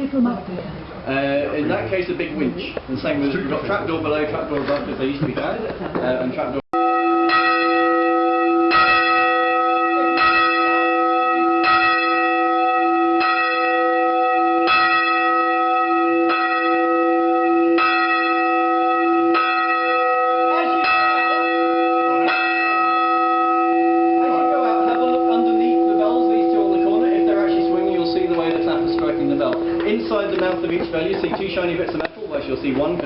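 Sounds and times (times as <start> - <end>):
church bells ringing: 6.8 - 33.0.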